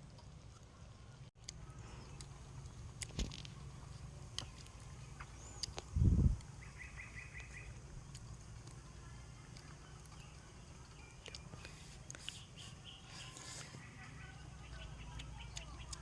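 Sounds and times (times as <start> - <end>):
bird chirping: 4.4 - 8.3, 9.6 - 16.0.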